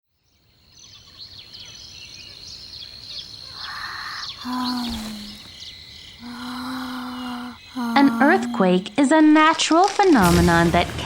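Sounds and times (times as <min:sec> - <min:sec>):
bird chirps: 0:00.2 - 0:09.0.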